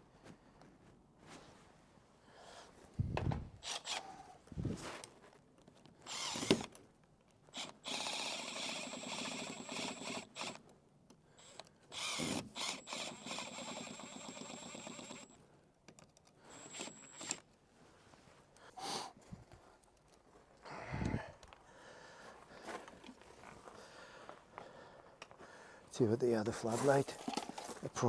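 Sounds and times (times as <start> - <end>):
hammer drill boring: 3.6 - 4.2, 6.1 - 6.7, 7.5 - 10.6, 11.4 - 15.4, 16.5 - 17.4.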